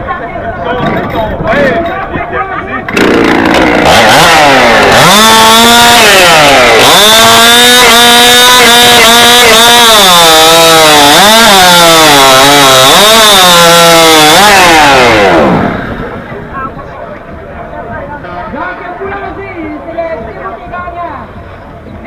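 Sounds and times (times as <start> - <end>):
chainsaw cutting through log: 2.9 - 16.3.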